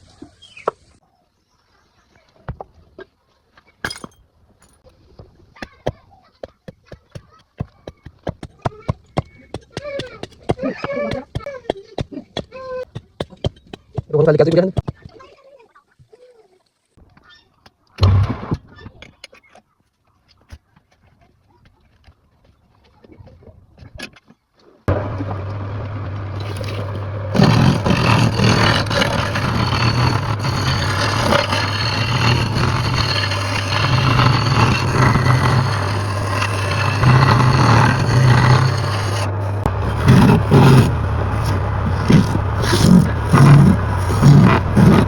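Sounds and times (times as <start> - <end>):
loud scraping of wood: 26.4 - 45.0
power tool motor humming: 26.4 - 45.0.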